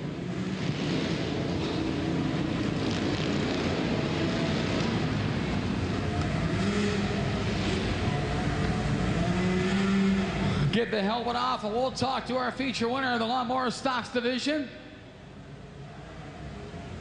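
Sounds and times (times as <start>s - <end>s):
lawn mower engines racing: 0.0s - 13.3s.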